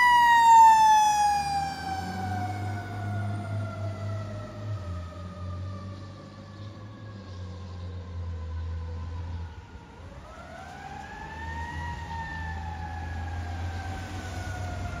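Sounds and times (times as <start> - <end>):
fire engine siren wailing: 0.0 - 15.0.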